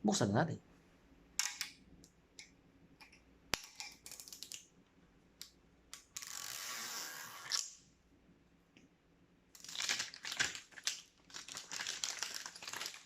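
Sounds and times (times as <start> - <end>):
plastic wrap crinkling: 9.6 - 13.0.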